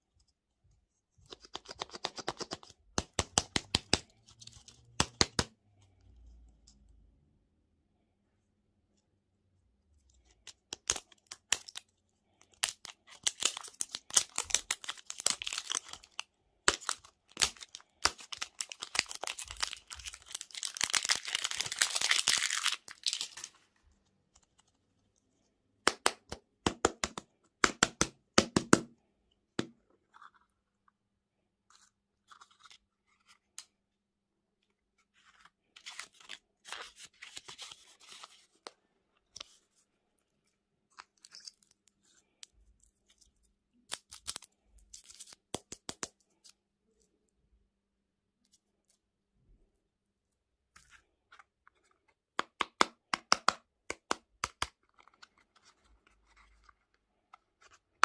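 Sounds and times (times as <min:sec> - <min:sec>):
plastic packaging crinkling and tearing: 0:12.5 - 0:23.6.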